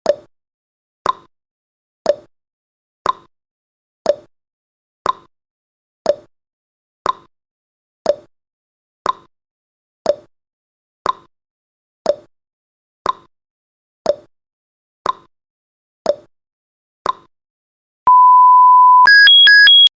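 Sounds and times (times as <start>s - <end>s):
alarm of high beeps: 18.1s - 19.9s
steady beep: 18.1s - 19.9s.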